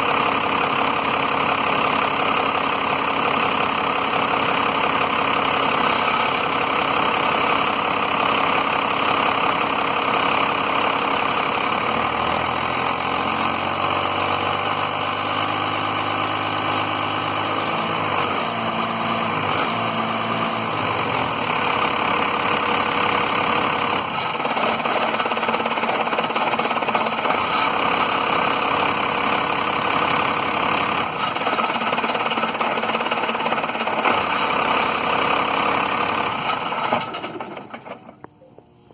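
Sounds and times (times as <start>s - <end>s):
diesel engine idling roughly: 0.0s - 38.3s.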